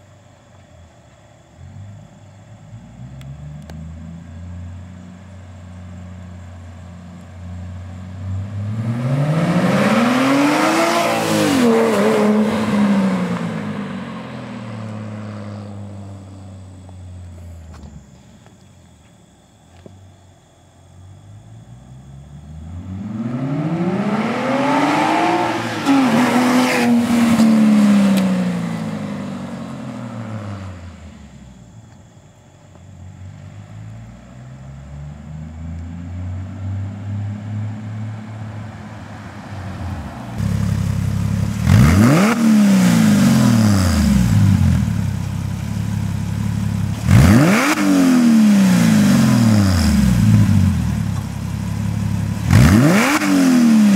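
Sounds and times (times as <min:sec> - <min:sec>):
sports car engine accelerating: 0:01.6 - 0:18.2, 0:21.6 - 0:31.8, 0:33.2 - 0:53.9
engine revving: 0:08.0 - 0:16.3, 0:22.4 - 0:31.0, 0:40.1 - 0:53.9.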